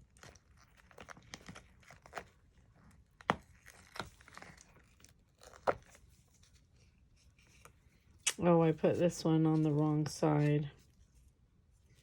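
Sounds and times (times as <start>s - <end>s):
light clicks and crinkling: 0.0s - 8.5s.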